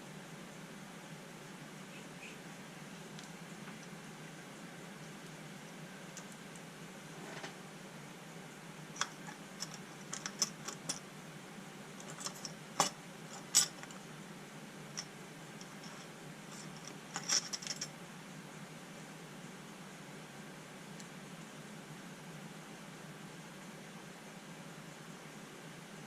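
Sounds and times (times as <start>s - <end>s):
faint steady hum: 0.0s - 26.0s
small parts clicking and clinking: 9.0s - 11.0s, 12.0s - 14.0s, 14.9s - 17.9s.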